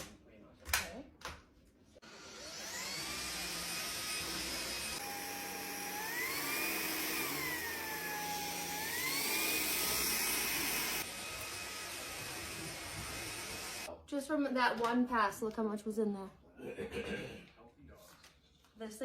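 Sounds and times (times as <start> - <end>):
vacuum cleaner motor whine: 2.0 - 13.9.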